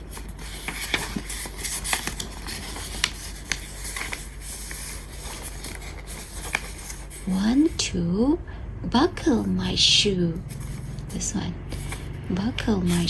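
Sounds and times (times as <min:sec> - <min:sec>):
book pages turning: 0:00.0 - 0:07.8, 0:10.4 - 0:13.0
steady low hum: 0:00.0 - 0:13.0.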